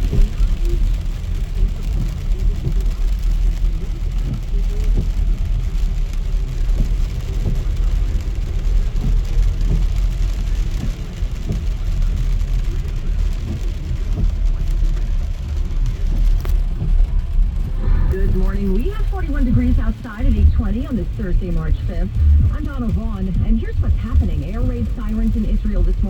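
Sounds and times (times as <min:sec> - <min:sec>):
rain and tyre hiss: 0:00.0 - 0:26.0
road and engine rumble: 0:00.0 - 0:26.0.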